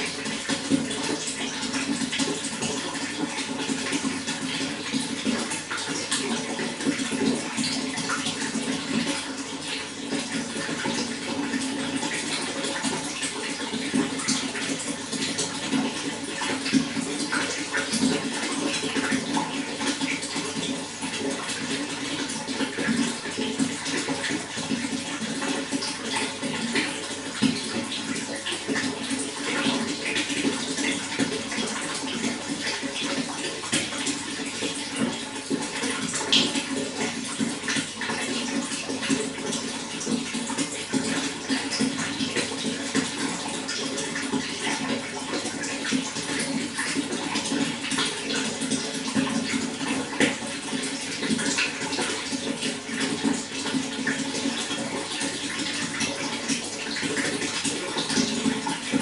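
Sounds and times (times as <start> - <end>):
running water splashing: 0.0 - 59.0.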